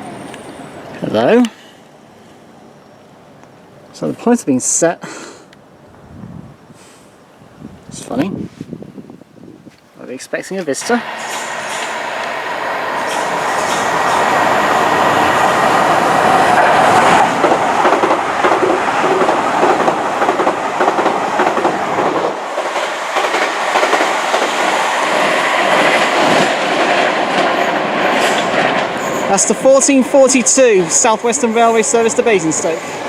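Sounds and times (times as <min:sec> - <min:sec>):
train wheels clattering on rails: 0:10.8 - 0:33.0.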